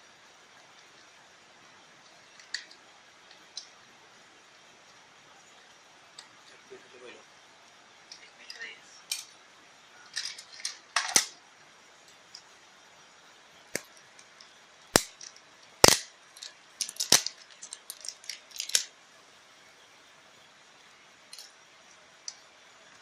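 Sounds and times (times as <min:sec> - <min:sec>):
hard objects clicking and snapping: 0:10.1 - 0:11.4, 0:13.7 - 0:18.9.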